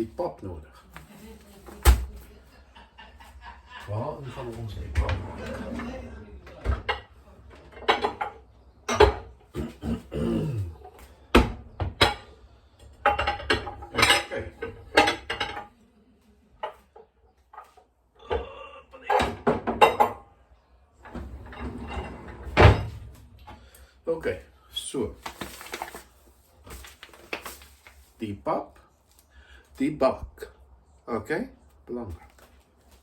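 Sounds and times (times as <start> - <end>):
cupboard door: 1.7 - 2.3
dishes clinking and knocking: 4.9 - 10.2, 10.8 - 15.7, 19.0 - 20.3, 21.0 - 23.1.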